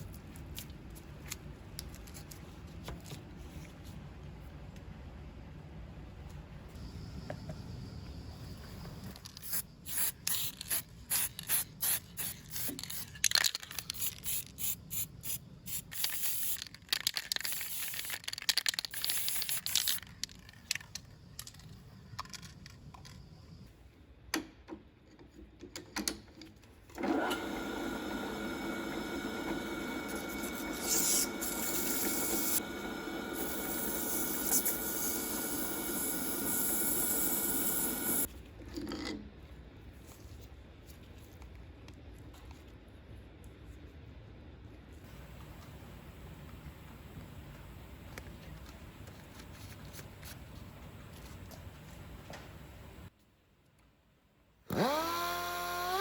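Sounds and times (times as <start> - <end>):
small electric power tool running: 27.1 - 38.3, 54.7 - 56.0.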